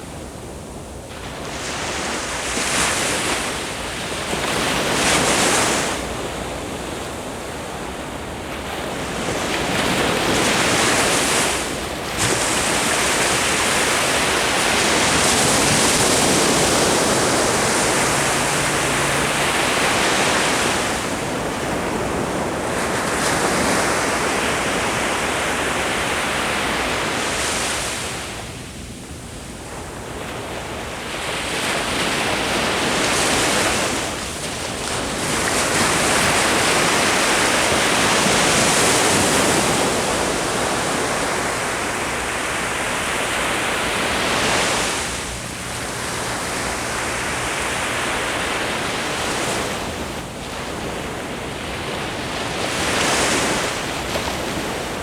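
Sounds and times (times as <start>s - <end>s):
ocean waves breaking on shore: 0.0s - 55.0s
wind on microphone: 1.0s - 28.5s.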